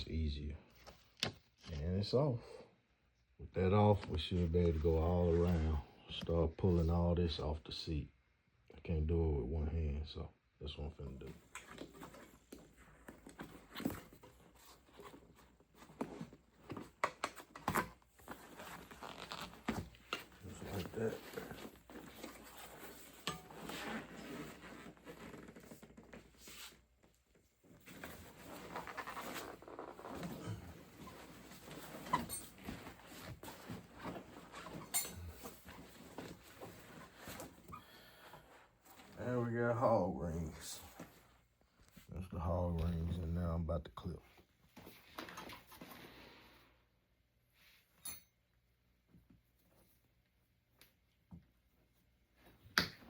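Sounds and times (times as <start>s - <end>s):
upholstery rustling and scraping: 11.3s - 39.2s.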